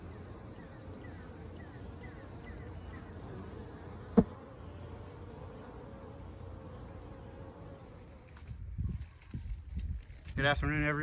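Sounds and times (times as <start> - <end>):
bees buzzing: 0.0 - 8.4.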